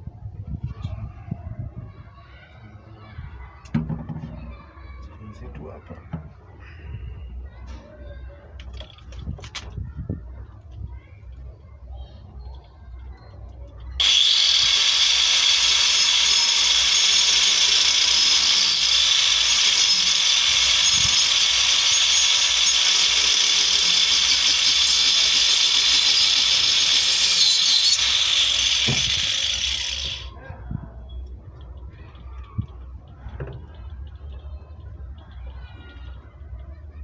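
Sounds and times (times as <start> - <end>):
power tool whining on wood: 14.0 - 30.3.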